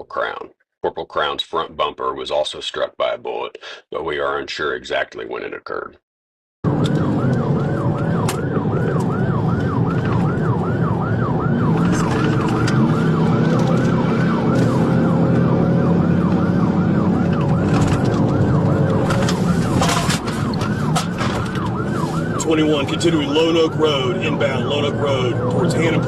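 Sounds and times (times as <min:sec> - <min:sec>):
vehicle engine and road noise: 0:06.6 - 0:26.0
police siren yelping: 0:06.7 - 0:26.0.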